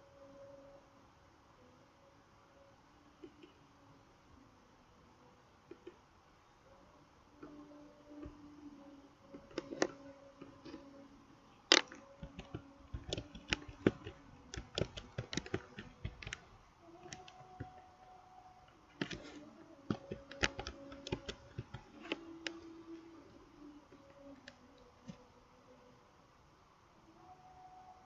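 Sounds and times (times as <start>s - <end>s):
faint low hum: 0.0s - 28.0s
sharp clicks and taps: 11.7s - 16.4s, 19.9s - 22.7s.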